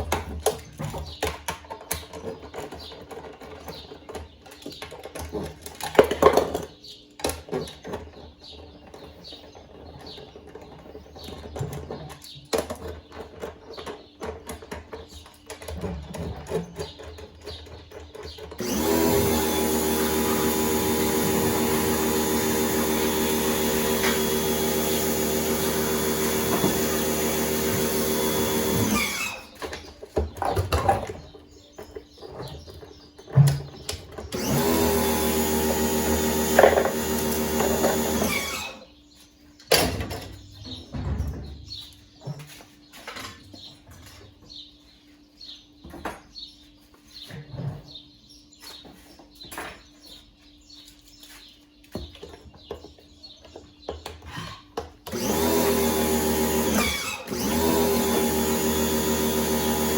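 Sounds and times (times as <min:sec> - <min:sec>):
tools and parts clicking and knocking: 0:00.0 - 0:38.8
electric power tool motor running: 0:18.6 - 0:29.8, 0:34.3 - 0:39.0, 0:55.0 - 0:59.9.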